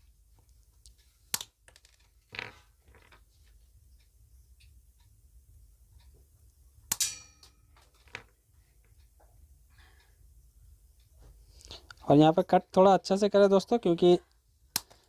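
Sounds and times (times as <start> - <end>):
metallic clang: 6.9 - 8.2.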